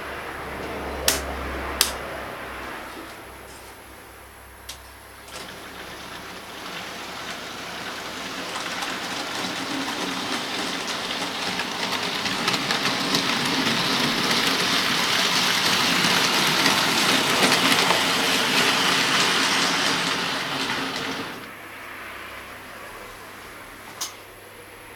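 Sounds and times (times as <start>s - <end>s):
model train wheels clicking on rails: 4.7s - 21.5s.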